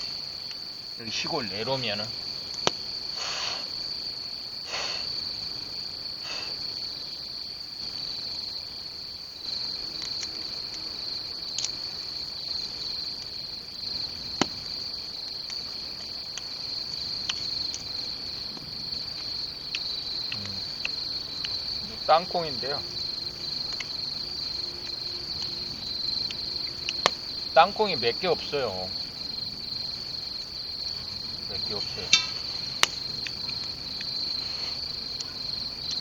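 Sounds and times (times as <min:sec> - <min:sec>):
crickets and insects trilling: 0:00.0 - 0:36.0
sharp clicks and cracks: 0:11.6 - 0:11.8, 0:32.1 - 0:34.1.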